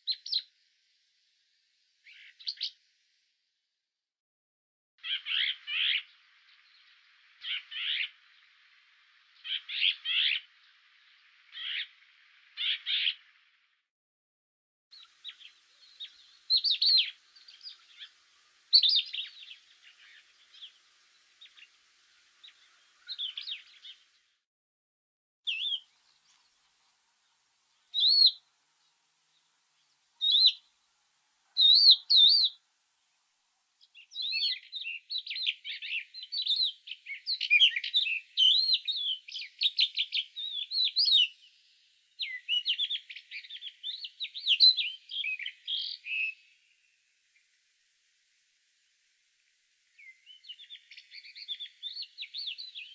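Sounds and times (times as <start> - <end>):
fast warbling birdsong: 0.0 - 0.5, 2.0 - 2.8, 5.0 - 13.6, 15.0 - 24.4, 25.5 - 30.8, 31.4 - 32.6, 33.8 - 47.5, 49.8 - 52.9
songbirds chirping and whistling: 0.0 - 0.5, 2.0 - 2.8, 5.0 - 13.3, 15.0 - 24.3, 25.5 - 30.8, 31.5 - 32.6, 33.8 - 46.7, 49.8 - 52.9.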